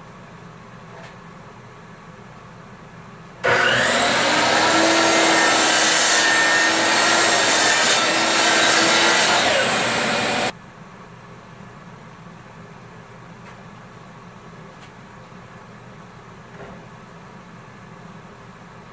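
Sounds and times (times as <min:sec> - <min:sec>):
power saw cutting wood: 0:03.4 - 0:10.5.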